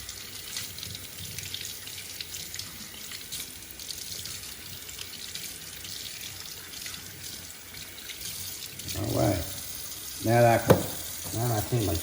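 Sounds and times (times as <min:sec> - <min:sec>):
kitchen tap running into sink: 0:00.0 - 0:12.0
small splashes and knocks: 0:10.6 - 0:11.4.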